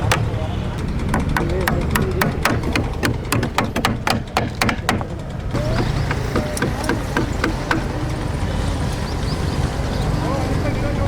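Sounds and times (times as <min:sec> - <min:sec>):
sharp knocks or clicks: 0:00.0 - 0:08.1.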